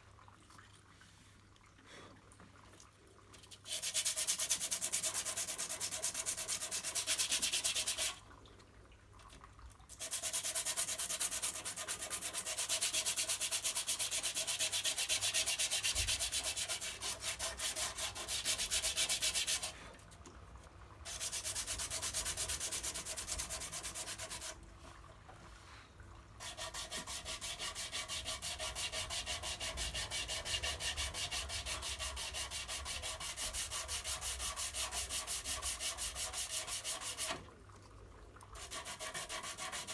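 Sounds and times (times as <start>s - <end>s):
sandpaper rubbing strokes: 3.7s - 8.1s, 10.0s - 19.8s, 21.1s - 24.6s, 26.4s - 37.4s, 38.6s - 39.9s.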